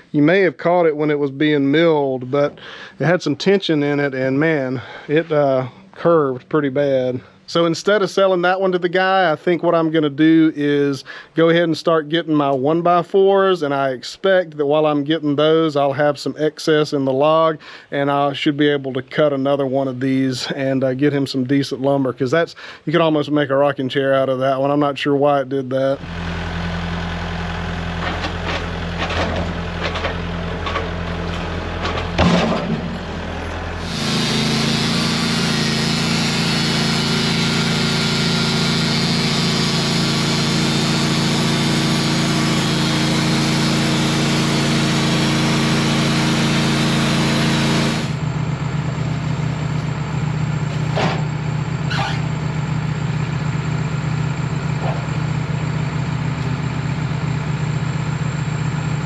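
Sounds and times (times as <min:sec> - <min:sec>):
sawmill engine running: 0:00.0 - 0:06.1, 0:26.0 - 0:59.0
band blade cutting log: 0:33.8 - 0:48.2.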